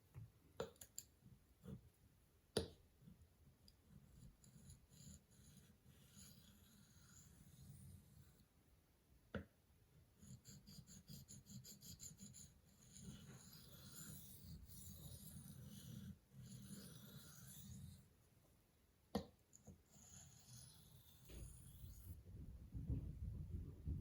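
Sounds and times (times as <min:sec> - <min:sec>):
knife scraping sharpening stone: 0:11.2 - 0:18.1, 0:19.9 - 0:22.1.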